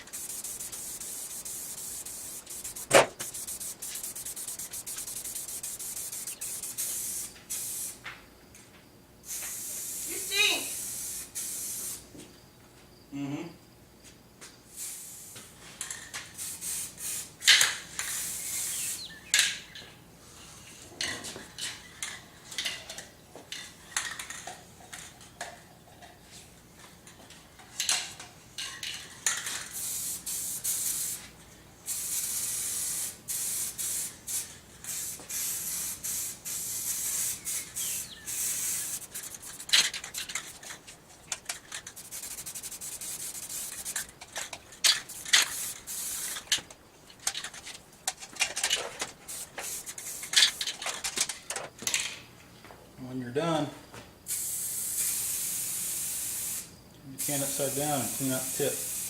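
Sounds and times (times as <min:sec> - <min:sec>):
spray can clicks and rattles: 0:00.0 - 0:08.0, 0:15.8 - 0:19.6, 0:27.8 - 0:31.2, 0:31.9 - 0:52.1
spray paint can hissing: 0:00.0 - 0:08.0, 0:09.2 - 0:12.0, 0:16.4 - 0:19.2, 0:29.4 - 0:31.3, 0:31.9 - 0:46.7, 0:49.1 - 0:50.8, 0:54.3 - 0:59.0.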